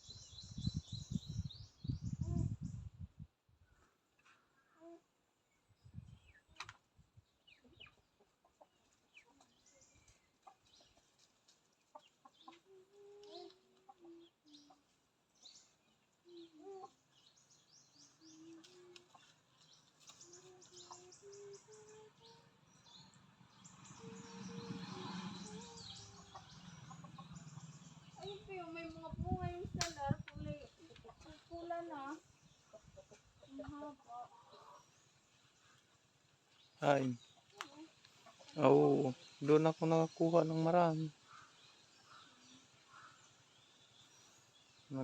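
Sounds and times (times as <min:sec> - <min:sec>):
small birds chirping: 0:00.0 - 0:45.0
chickens clucking softly: 0:07.5 - 0:15.0, 0:24.9 - 0:28.2, 0:32.7 - 0:34.9.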